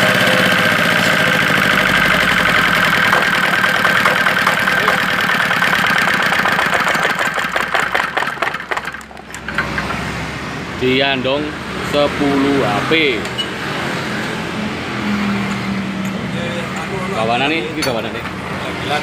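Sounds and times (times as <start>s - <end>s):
diesel engine thudding: 0.0s - 10.5s.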